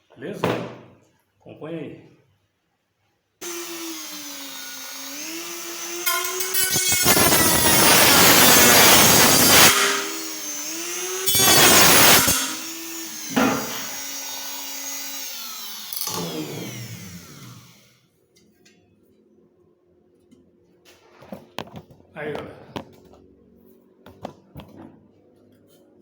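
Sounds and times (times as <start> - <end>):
motor whining: 3.4 - 17.9
rotary tool grinding metal: 3.4 - 17.9.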